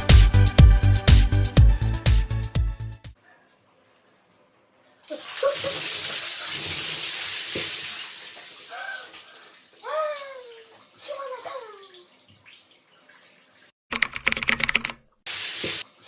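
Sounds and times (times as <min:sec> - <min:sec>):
water rushing and splashing: 0:05.1 - 0:13.6
high voice-like cries: 0:09.8 - 0:12.0.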